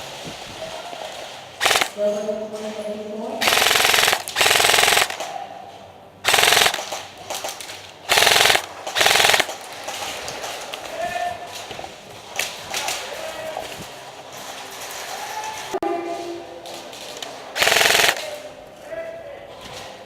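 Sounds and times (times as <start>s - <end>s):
airsoft guns firing bursts: 1.5s - 2.2s, 3.4s - 5.4s, 6.2s - 10.8s, 17.5s - 18.6s.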